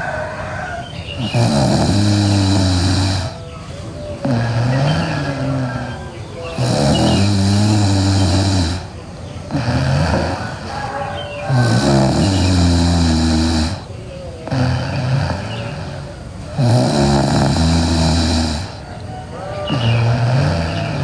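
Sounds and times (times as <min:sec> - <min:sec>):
girl snoring loudly: 0:00.0 - 0:18.8, 0:19.6 - 0:21.0.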